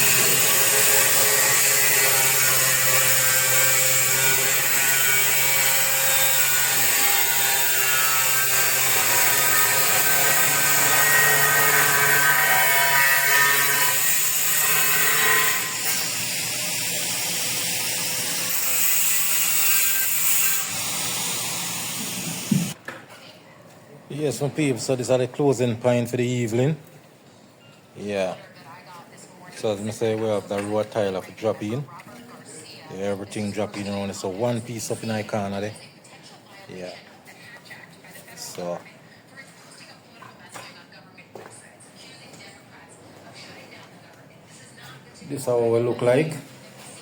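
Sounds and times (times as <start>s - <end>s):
power tool cutting tile: 0.0s - 22.8s.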